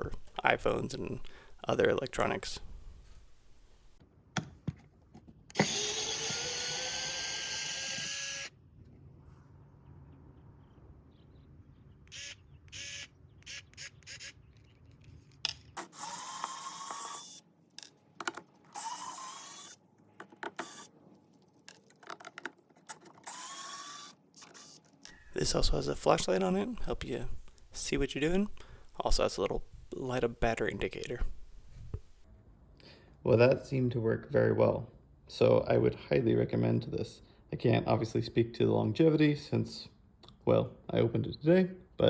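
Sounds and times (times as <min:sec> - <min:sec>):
electric screwdriver motor whining: 0:05.5 - 0:08.5, 0:12.1 - 0:14.3, 0:16.0 - 0:17.4, 0:18.7 - 0:19.8, 0:23.2 - 0:24.1.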